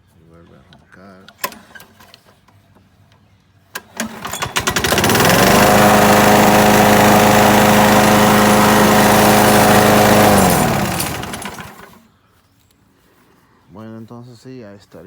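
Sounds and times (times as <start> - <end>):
lawnmower engine running: 3.7 - 12.1.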